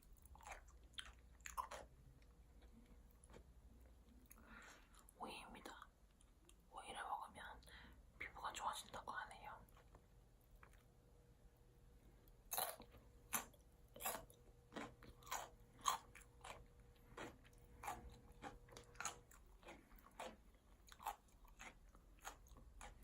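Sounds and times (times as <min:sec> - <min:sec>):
crisp crunching bites: 0:12.5 - 0:23.0.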